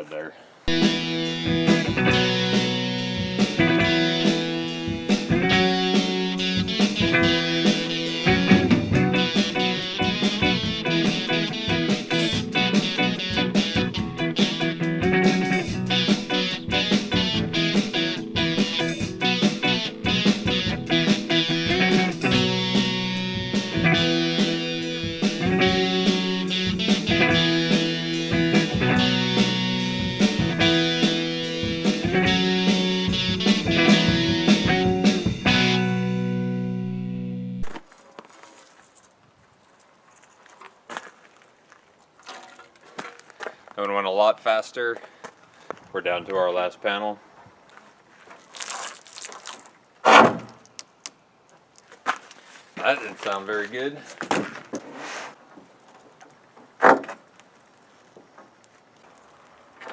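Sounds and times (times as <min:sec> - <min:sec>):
guitar music with steady beat: 0:00.7 - 0:37.7.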